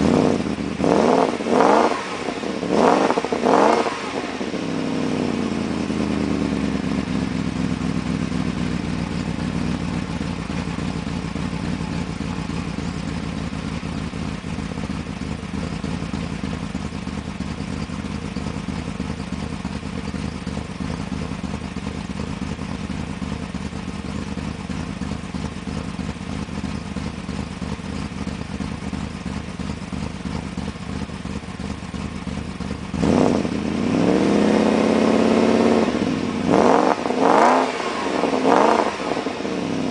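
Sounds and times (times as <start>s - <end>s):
engine revving sharply: 0.0s - 4.6s, 33.0s - 39.9s
car engine idling rough: 0.0s - 39.9s.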